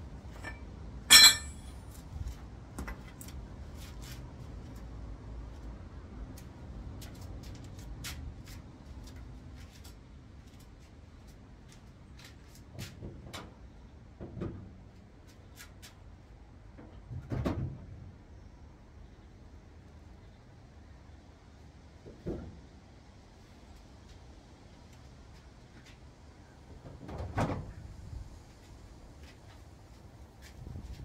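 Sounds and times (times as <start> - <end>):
low steady hum: 0.0 - 1.9.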